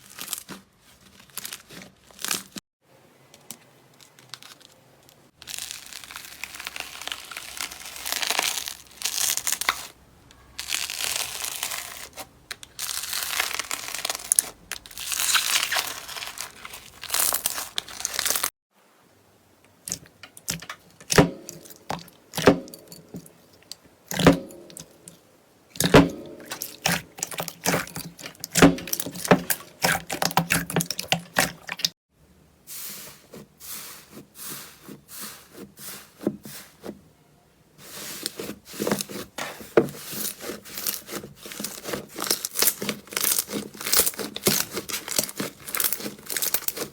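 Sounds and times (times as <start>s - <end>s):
slime crinkling: 0.0s - 2.6s, 3.9s - 18.5s, 25.8s - 31.9s, 37.8s - 46.9s.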